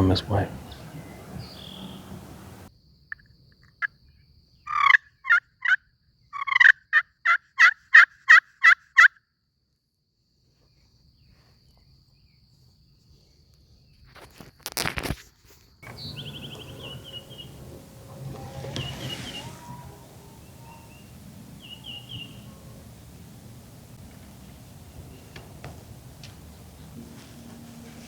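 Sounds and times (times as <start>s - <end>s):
wild turkey calling: 0.0s - 2.7s, 15.8s - 27.3s
brief rustle: 14.1s - 28.0s.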